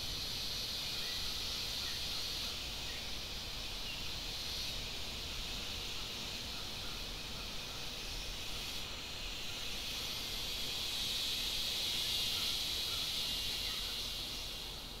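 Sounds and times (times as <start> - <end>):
insects droning: 0.0 - 15.0.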